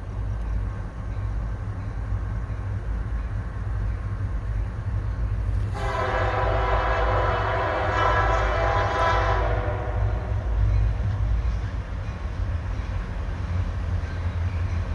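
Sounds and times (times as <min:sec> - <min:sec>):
diesel locomotive rumbling: 0:00.0 - 0:14.9
locomotive air horn: 0:05.7 - 0:10.7.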